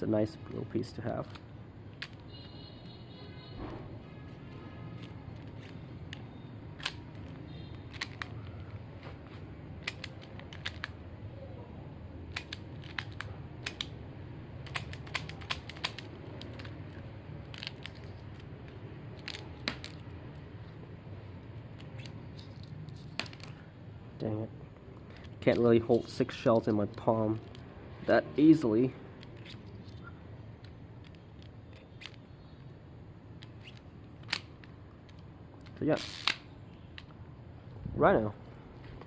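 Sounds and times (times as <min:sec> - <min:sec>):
toy revolver clicks and clacks: 0:06.8 - 0:08.4, 0:09.8 - 0:11.0, 0:12.3 - 0:14.0, 0:14.6 - 0:18.5.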